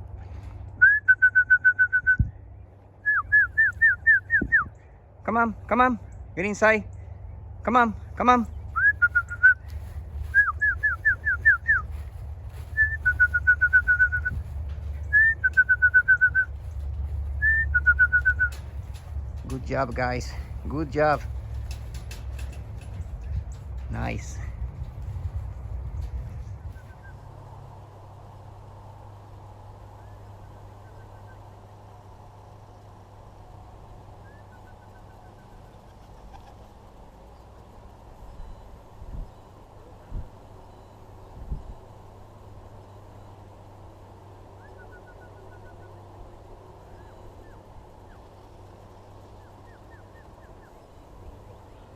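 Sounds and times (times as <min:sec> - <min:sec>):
low rumble: 0:00.0 - 0:31.6
person whistling: 0:00.8 - 0:02.3, 0:03.1 - 0:04.7, 0:10.3 - 0:11.9, 0:12.7 - 0:14.4, 0:15.1 - 0:16.5, 0:17.4 - 0:18.6.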